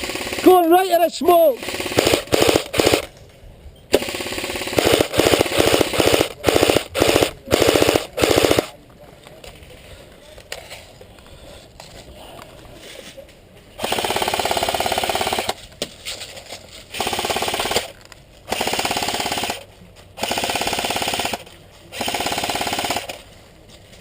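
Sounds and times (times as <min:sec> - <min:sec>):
airsoft rifle firing bursts: 0:00.0 - 0:03.1, 0:03.9 - 0:08.7, 0:13.8 - 0:15.6, 0:16.9 - 0:23.3.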